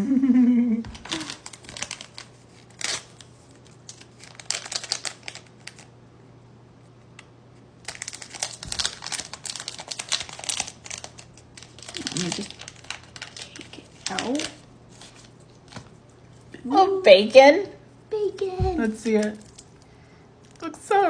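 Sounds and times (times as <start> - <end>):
plastic packaging crinkling and clicking: 0.9 - 5.9, 7.2 - 16.2, 19.0 - 20.6.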